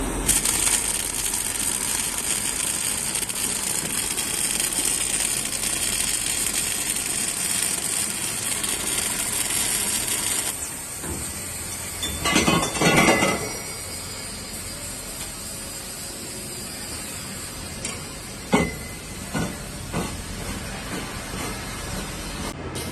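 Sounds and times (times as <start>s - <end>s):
welding arc hiss: 0.0s - 20.6s.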